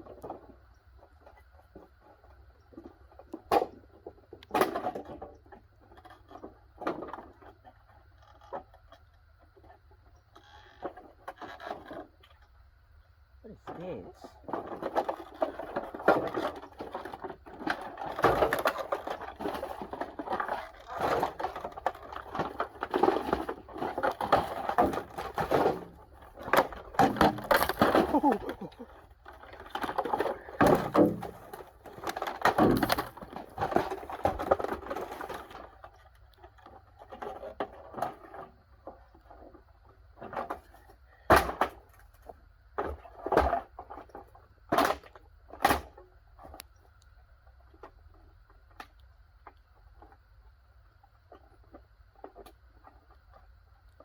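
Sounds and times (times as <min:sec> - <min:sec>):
plastic and metal parts clattering: 0:14.4 - 0:39.5.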